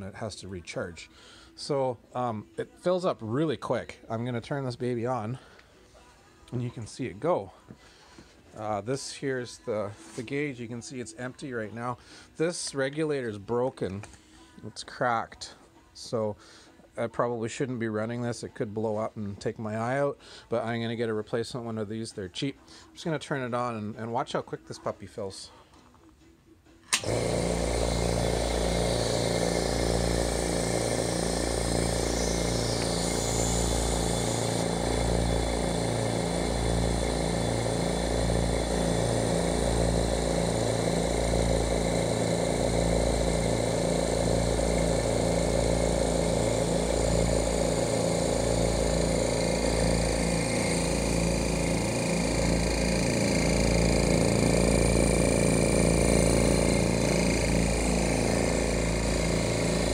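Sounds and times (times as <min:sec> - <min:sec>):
air compressor running: 0:05.3 - 0:05.7, 0:26.9 - 0:59.9.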